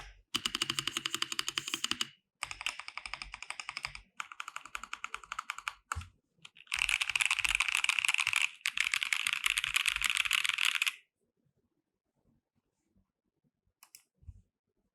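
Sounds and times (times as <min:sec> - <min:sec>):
fast typing on mechanical keyboard: 0:00.4 - 0:11.0.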